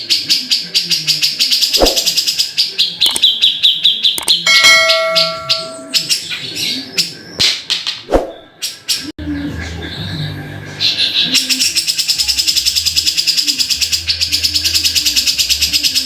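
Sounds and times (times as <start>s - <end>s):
sharp clicks: 3.0s - 3.4s, 4.1s - 4.4s.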